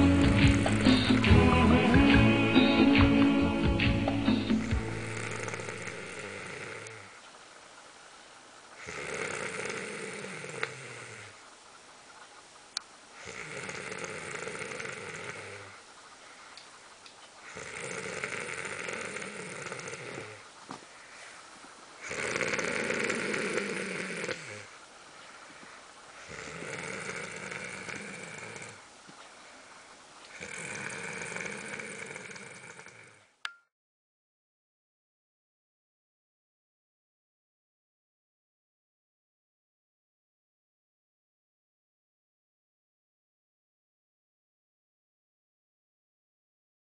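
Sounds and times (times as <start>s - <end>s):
quiet breathing: 0.0s - 1.3s, 4.3s - 7.4s, 8.7s - 11.6s, 13.1s - 33.4s
person snoring: 0.0s - 7.2s, 8.8s - 11.4s, 13.2s - 15.8s, 17.4s - 20.4s, 22.0s - 24.8s, 26.2s - 28.9s, 30.3s - 33.3s.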